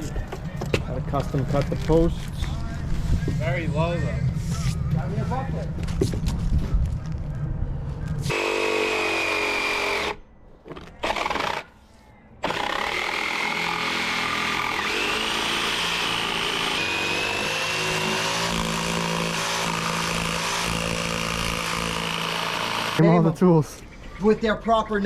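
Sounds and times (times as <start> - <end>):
power tool motor whining: 8.2 - 11.6, 12.4 - 23.0.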